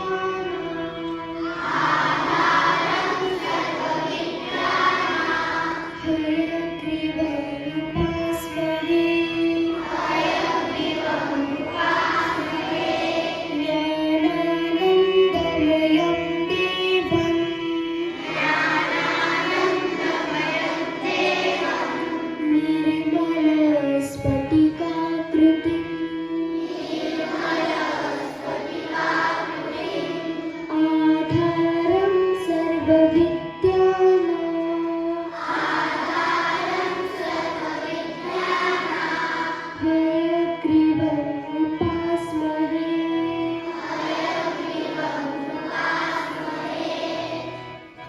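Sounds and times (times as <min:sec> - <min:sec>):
group of voices singing: 0:01.5 - 0:06.1, 0:09.6 - 0:13.9, 0:18.1 - 0:22.4, 0:26.5 - 0:31.5, 0:35.3 - 0:39.9, 0:43.6 - 0:47.6.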